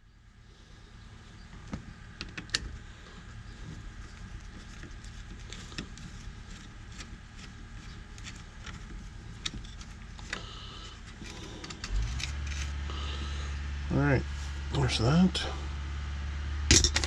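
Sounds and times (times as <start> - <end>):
steady low hum: 0.0 - 17.0
clicks and rattles of hand work: 1.6 - 2.8, 3.6 - 12.8, 16.7 - 17.0.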